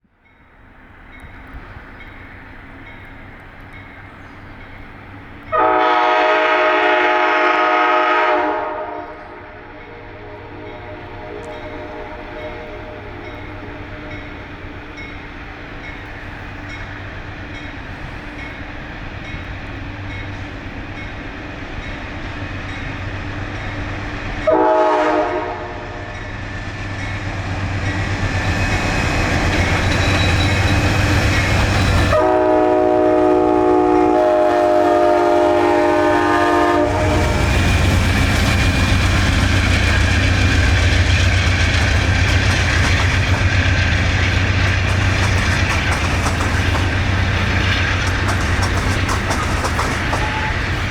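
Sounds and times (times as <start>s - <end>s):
train passing rumble: 0.0s - 50.9s
train air horn blasts: 5.5s - 14.9s, 24.4s - 26.3s, 31.9s - 37.5s, 50.0s - 50.9s.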